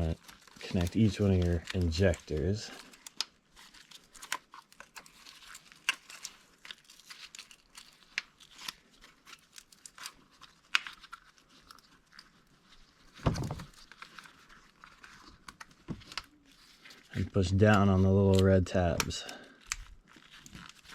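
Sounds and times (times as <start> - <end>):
plastic rustling: 0.0 - 20.9.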